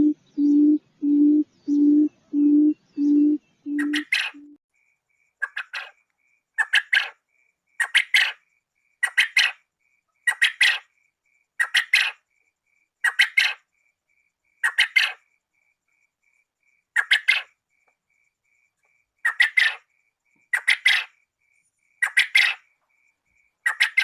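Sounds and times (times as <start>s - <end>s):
quail calling: 0.0s - 4.6s, 5.4s - 6.0s, 6.6s - 7.2s, 7.8s - 8.4s, 9.0s - 9.6s, 10.3s - 10.9s, 11.6s - 12.2s, 13.0s - 13.6s, 14.6s - 15.2s, 17.0s - 17.5s, 19.2s - 19.8s, 20.5s - 21.1s, 22.0s - 22.6s, 23.6s - 24.0s.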